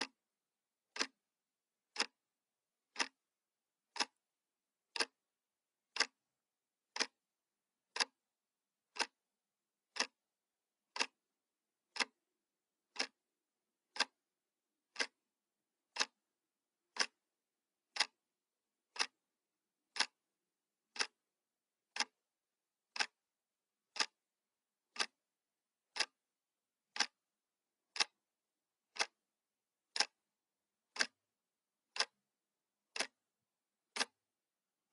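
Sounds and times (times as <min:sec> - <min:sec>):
clock ticking: 0:00.0 - 0:00.2, 0:00.9 - 0:01.2, 0:01.9 - 0:02.2, 0:02.9 - 0:03.2, 0:03.9 - 0:04.2, 0:04.9 - 0:05.2, 0:05.9 - 0:06.3, 0:06.9 - 0:07.2, 0:07.9 - 0:08.3, 0:08.9 - 0:09.2, 0:09.9 - 0:10.2, 0:10.9 - 0:11.2, 0:11.9 - 0:12.2, 0:12.9 - 0:13.2, 0:13.9 - 0:14.2, 0:14.9 - 0:15.2, 0:15.9 - 0:16.3, 0:16.9 - 0:17.2, 0:17.9 - 0:18.2, 0:18.9 - 0:19.2, 0:19.9 - 0:20.2, 0:20.9 - 0:21.3, 0:21.9 - 0:22.2, 0:22.9 - 0:23.2, 0:23.9 - 0:24.3, 0:24.9 - 0:25.2, 0:25.9 - 0:26.2, 0:26.9 - 0:27.2, 0:27.9 - 0:28.3, 0:28.9 - 0:29.3, 0:29.9 - 0:31.3, 0:31.9 - 0:33.3, 0:33.9 - 0:34.3.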